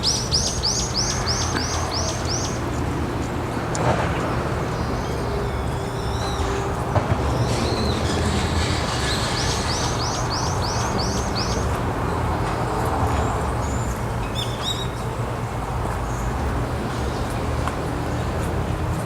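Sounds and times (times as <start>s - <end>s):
bird calling high notes: 4.7s - 11.7s.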